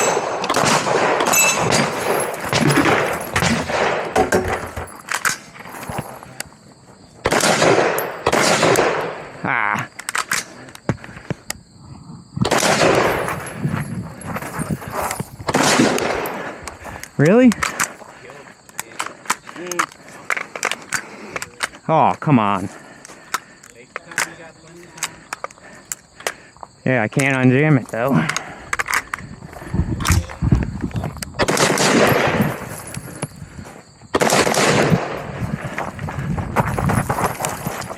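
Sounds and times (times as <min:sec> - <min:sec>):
rapid echoing gunshots: 0:00.0 - 0:04.4, 0:07.2 - 0:09.4, 0:12.4 - 0:13.4, 0:15.5 - 0:16.6, 0:31.4 - 0:32.7, 0:34.2 - 0:35.4
gunshots cracking: 0:00.0 - 0:04.6, 0:07.2 - 0:09.4, 0:12.4 - 0:13.4, 0:15.4 - 0:16.6, 0:31.4 - 0:32.7, 0:34.2 - 0:35.4.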